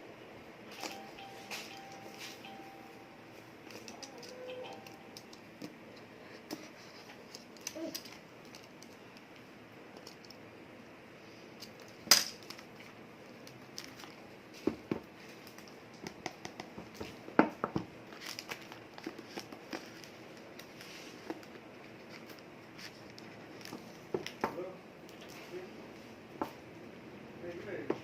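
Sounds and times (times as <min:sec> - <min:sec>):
packaging crinkles and clicks: 0:18.1 - 0:24.4.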